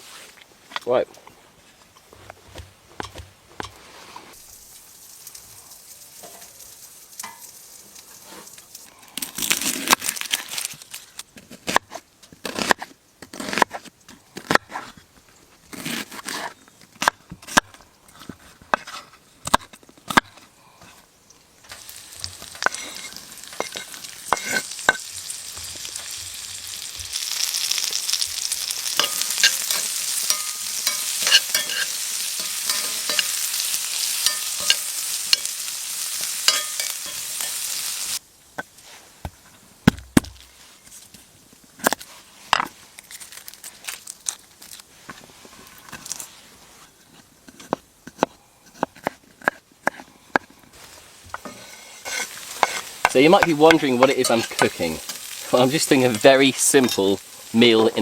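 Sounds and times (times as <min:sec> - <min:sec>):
chorizo sizzling in pan: 0:02.5 - 0:11.2, 0:21.2 - 0:46.8, 0:50.7 - 0:58.0
utensil scraping pan: 0:21.7 - 0:38.1, 0:51.3 - 0:58.0.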